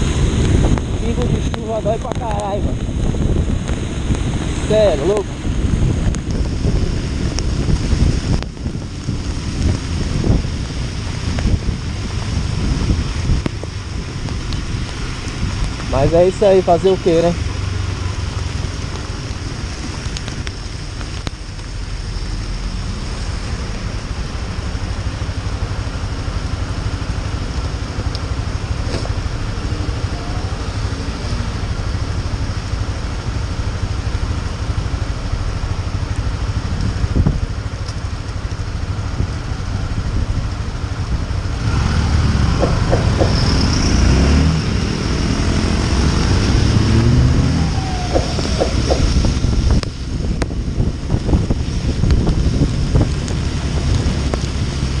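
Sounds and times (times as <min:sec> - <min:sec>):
road wind and rain hiss: 0:00.0 - 0:55.0
motorcycle engine running: 0:22.7 - 0:55.0.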